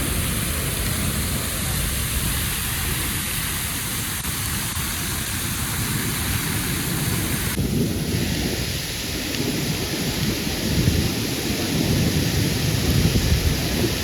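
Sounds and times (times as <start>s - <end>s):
heavy rain pouring: 0.0s - 14.0s.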